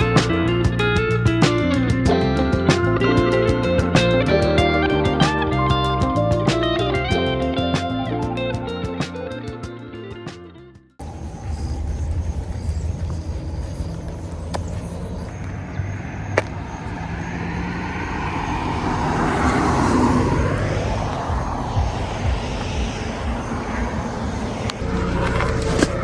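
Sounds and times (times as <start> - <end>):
road vehicle rumble: 11.0 - 26.0
broad whoosh of passing vehicle: 14.9 - 26.0.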